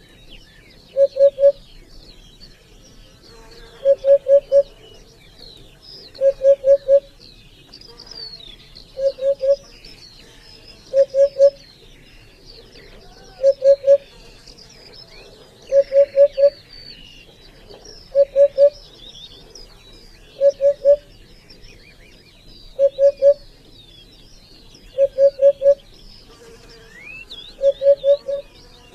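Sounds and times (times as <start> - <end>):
birds twittering: 0.0 - 28.9
bird hooting: 0.9 - 1.6, 3.8 - 4.7, 6.2 - 7.1, 9.0 - 9.6, 10.9 - 11.6, 13.0 - 14.0, 15.7 - 16.6, 18.1 - 18.8, 20.4 - 21.1, 22.8 - 23.5, 24.9 - 25.8, 27.5 - 28.5.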